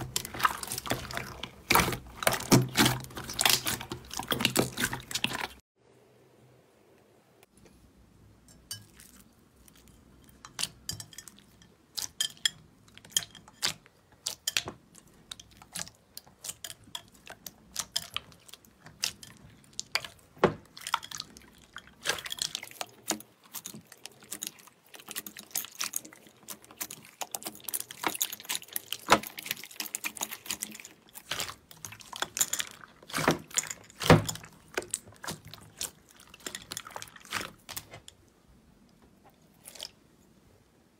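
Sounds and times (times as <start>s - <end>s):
slime squelching and popping: 0.0s - 5.6s, 19.8s - 38.1s.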